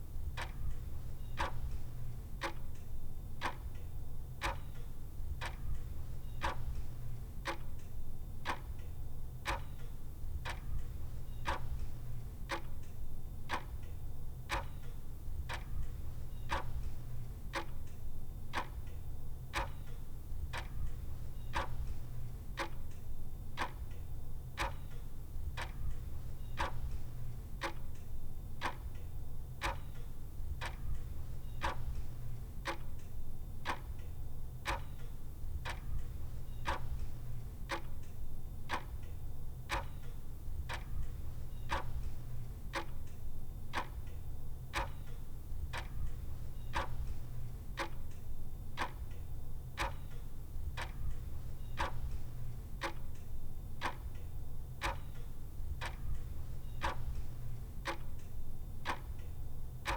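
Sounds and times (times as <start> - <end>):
low steady hum: 5.0 - 59.9
clock ticking: 30.6 - 33.0, 34.6 - 38.1, 38.7 - 39.1, 39.7 - 48.2, 48.8 - 49.2, 49.8 - 59.9.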